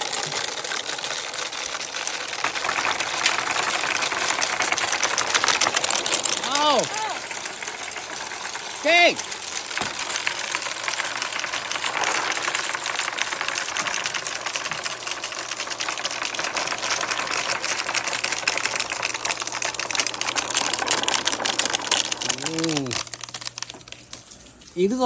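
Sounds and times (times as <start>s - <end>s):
marbles rattling down marble run: 0.0s - 25.0s.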